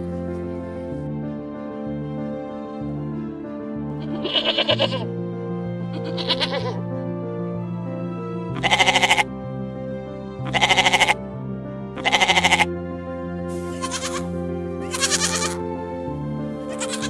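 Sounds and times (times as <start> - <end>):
background music: 0.0 - 17.0
quavering bleating: 3.9 - 5.1, 5.9 - 6.8, 8.6 - 9.3, 10.4 - 11.2, 12.0 - 12.7, 13.6 - 15.7, 16.6 - 17.0.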